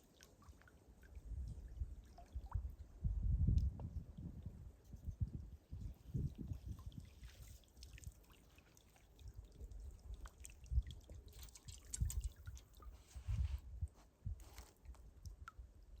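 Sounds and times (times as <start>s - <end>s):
water dripping and trickling: 3.5s - 13.1s.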